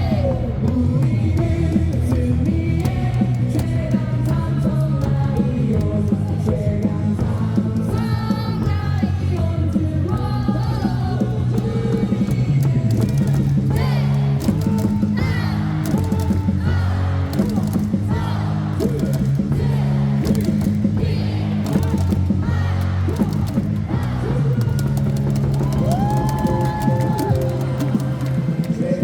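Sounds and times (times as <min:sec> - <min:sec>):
amplified cheering song: 0:00.0 - 0:29.0
crowd clapping: 0:21.6 - 0:29.0.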